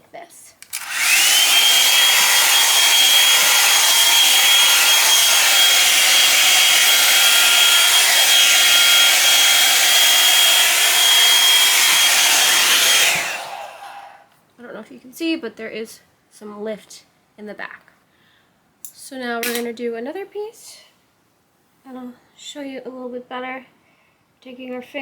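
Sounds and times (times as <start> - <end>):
blow-dryer brush motor whine: 0.7 - 14.2.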